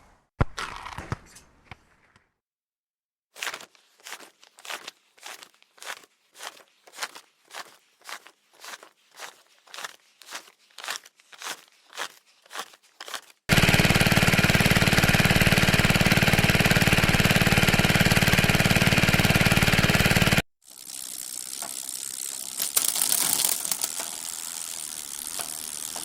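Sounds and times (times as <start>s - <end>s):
soft crunching strokes: 3.4s - 13.5s.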